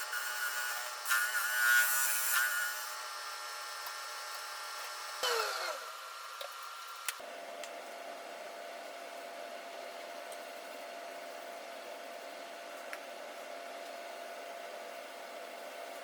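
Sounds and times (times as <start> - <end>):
power tool motor whining: 5.2 - 6.1.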